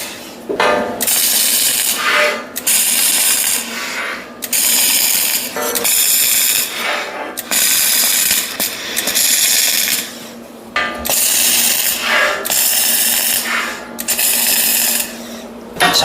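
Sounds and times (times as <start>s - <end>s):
steady low hum: 0.0s - 16.0s
welding arc crackle: 1.0s - 3.7s, 4.4s - 6.8s, 7.4s - 10.2s, 11.0s - 15.2s.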